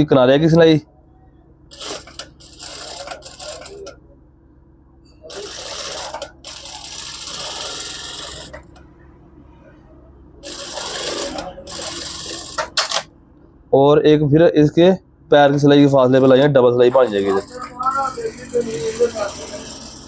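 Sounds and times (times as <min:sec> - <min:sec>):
sewing machine stitching: 0:01.7 - 0:03.9, 0:05.3 - 0:08.8, 0:10.4 - 0:13.1, 0:16.0 - 0:20.0.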